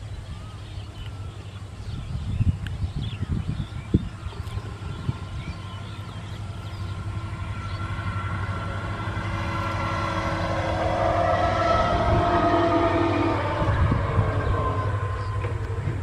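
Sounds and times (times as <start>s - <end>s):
diesel locomotive engine rumble: 0.0s - 16.0s
multi-tone train horn blast: 4.6s - 16.0s.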